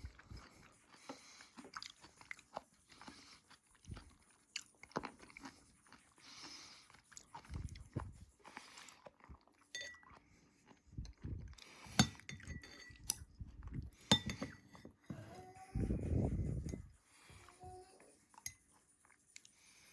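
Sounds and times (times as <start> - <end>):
person chewing and crunching food: 0.0 - 19.9
utensil clinking on dish: 9.7 - 10.1, 11.9 - 13.2, 14.0 - 14.8.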